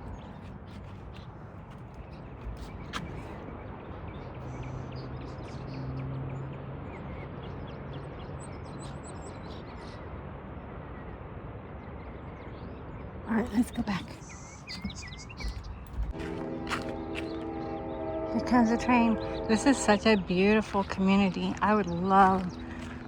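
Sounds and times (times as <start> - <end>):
steady rush of background noise: 0.0 - 23.0
low hum: 12.6 - 23.0
high bird chirps: 14.2 - 15.8.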